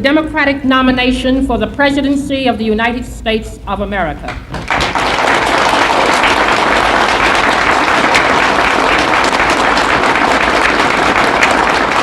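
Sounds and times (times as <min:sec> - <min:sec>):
audience applauding: 0:04.5 - 0:12.0.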